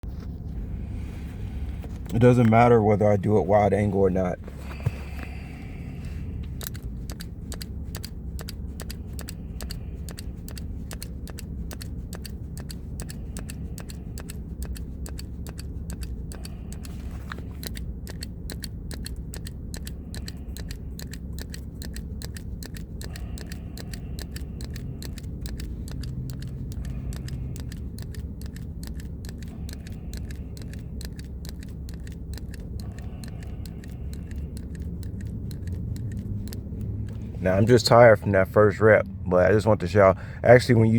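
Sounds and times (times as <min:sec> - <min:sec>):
hand gripper clicking: 0:06.4 - 0:37.3.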